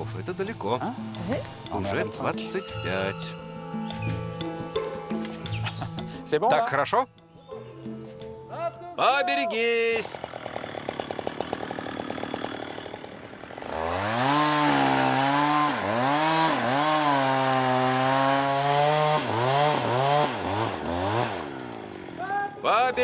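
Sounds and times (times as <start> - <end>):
chainsaw cutting wood: 9.8 - 22.2.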